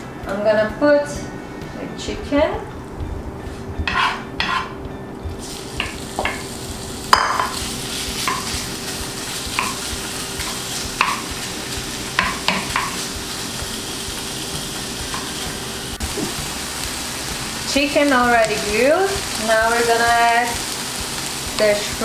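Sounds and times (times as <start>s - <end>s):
utensil scraping and knocking pan: 3.5s - 4.8s
chicken sizzling in a pan: 5.4s - 22.0s.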